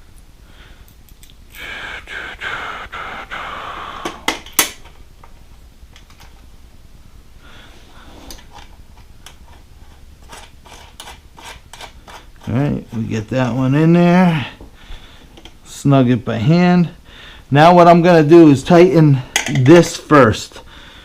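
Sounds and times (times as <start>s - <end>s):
metal hardware rubbing and scraping: 9.4s - 13.6s.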